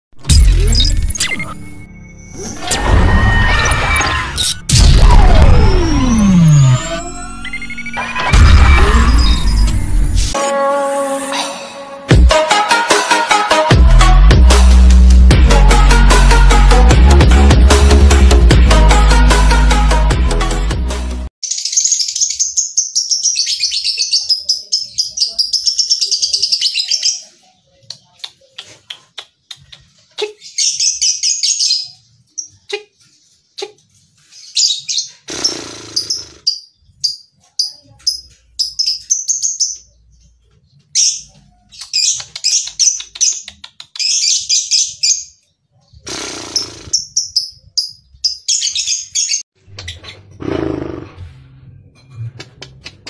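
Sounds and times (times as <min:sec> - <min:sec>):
lovebird chirping and trilling: 0:34.3 - 0:40.0, 0:41.0 - 0:50.2.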